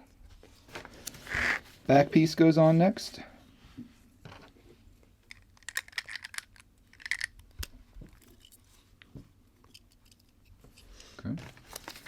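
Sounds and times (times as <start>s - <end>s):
plastic bricks clicking and rattling: 5.3s - 7.5s.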